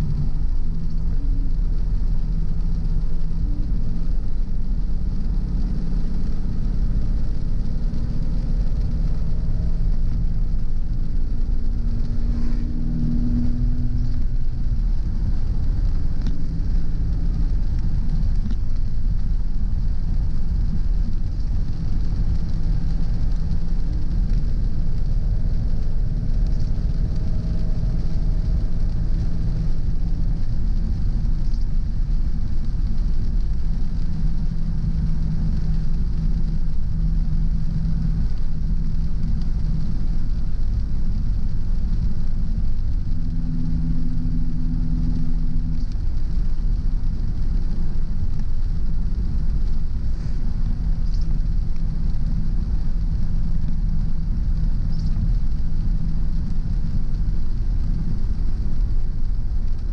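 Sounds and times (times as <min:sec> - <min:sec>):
car road and engine rumble: 0:00.0 - 0:59.9.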